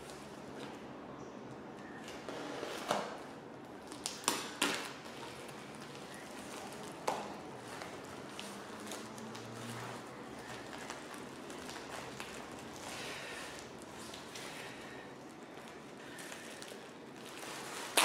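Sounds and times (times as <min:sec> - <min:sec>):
tape ripping off parcel: 0:03.8 - 0:14.5, 0:16.2 - 0:18.0.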